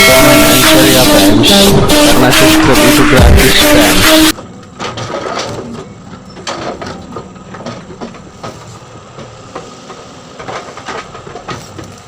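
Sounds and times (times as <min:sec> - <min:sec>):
excavator diesel engine running: 0:00.0 - 0:12.0
knocks from working machine: 0:06.4 - 0:11.9.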